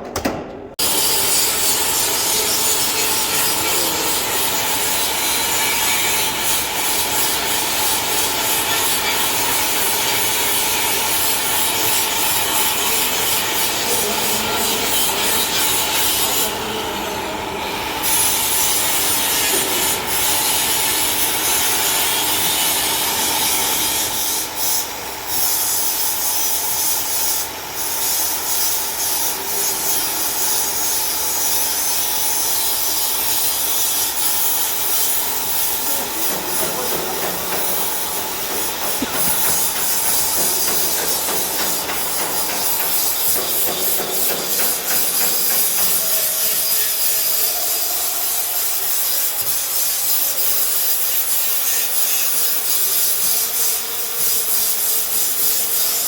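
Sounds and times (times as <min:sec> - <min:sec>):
sanding car bodywork: 0:00.8 - 0:56.0.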